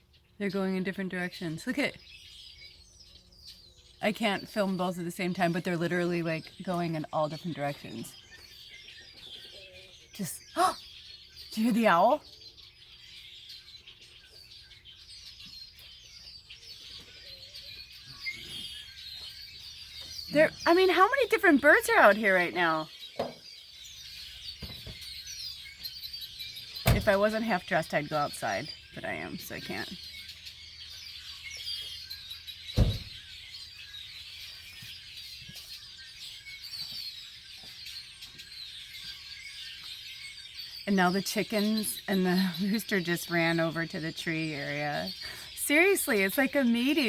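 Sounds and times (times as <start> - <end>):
many birds chirping: 0.0 - 47.0
sharp thump: 32.8 - 33.2.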